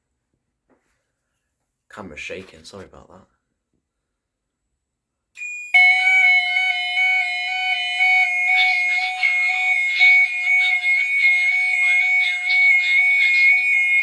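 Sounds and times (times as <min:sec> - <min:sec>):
fire alarm high warbling tone: 0:05.4 - 0:14.0
fire alarm lower tone: 0:05.4 - 0:14.0
fire alarm pulsing tone: 0:05.4 - 0:14.0.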